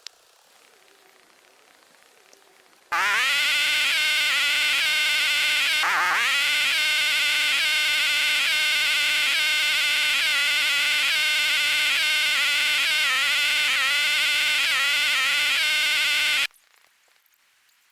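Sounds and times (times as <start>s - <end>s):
loud buzzing tone: 2.9s - 16.5s.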